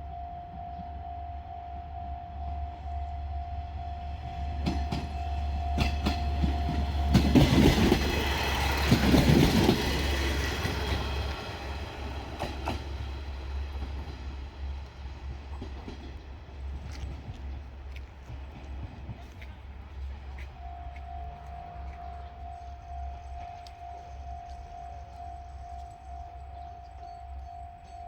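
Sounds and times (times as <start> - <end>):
railcar engine drone: 0.0 - 28.0
train wheels clacking over rail joints: 4.6 - 21.1.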